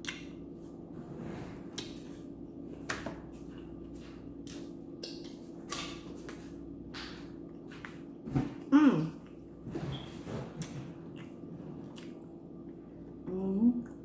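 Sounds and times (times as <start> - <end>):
steady low hum: 0.0 - 14.0
person chewing food: 10.6 - 13.2.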